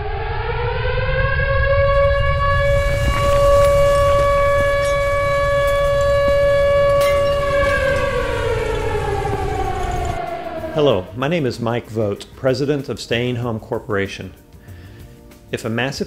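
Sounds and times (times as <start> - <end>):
warning siren wailing: 0.0 - 11.2
low rumble: 0.0 - 11.4.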